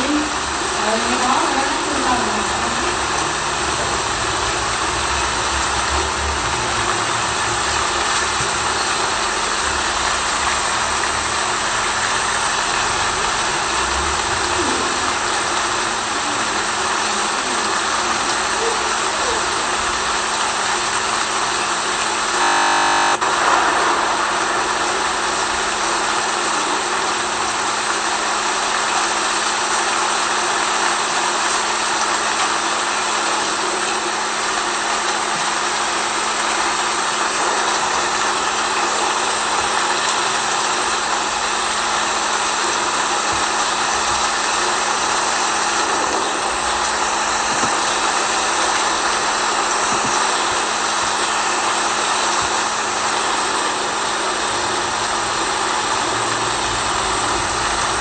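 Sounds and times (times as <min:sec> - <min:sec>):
rain-like hiss: 0:00.0 - 0:58.0
low hum: 0:22.4 - 0:27.5.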